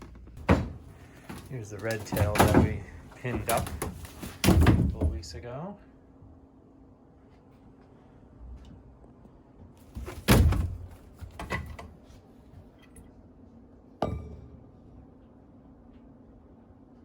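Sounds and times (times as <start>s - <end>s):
door rattling: 0.0s - 5.3s
door thudding: 0.4s - 5.2s, 10.0s - 11.5s
knocks: 0.4s - 5.2s.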